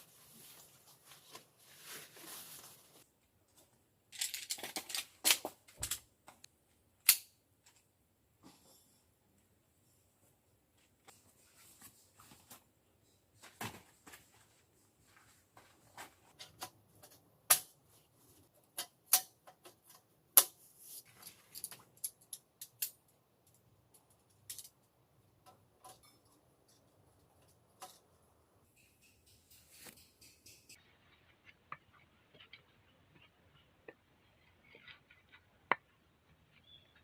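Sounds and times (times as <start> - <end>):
objects clicking and knocking: 21.2 - 30.8.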